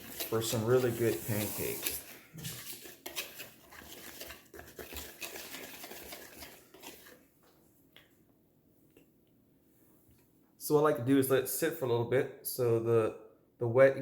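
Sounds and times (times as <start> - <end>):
utensil scraping a bowl: 0.0 - 7.2.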